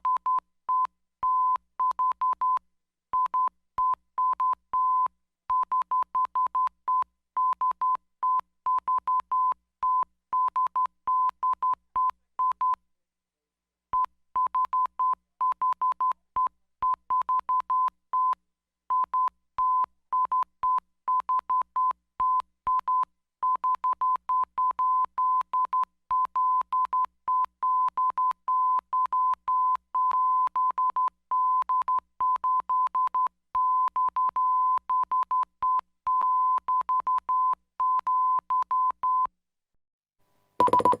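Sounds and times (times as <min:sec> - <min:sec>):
morse code beeps: 0:40.6 - 0:41.0.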